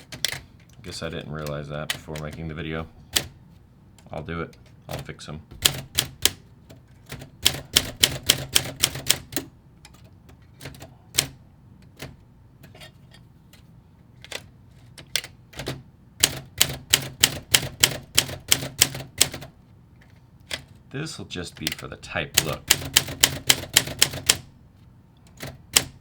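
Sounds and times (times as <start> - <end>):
manual typewriter typing: 0.0 - 3.4, 4.0 - 12.2, 14.3 - 19.5, 21.4 - 24.5, 25.3 - 26.0.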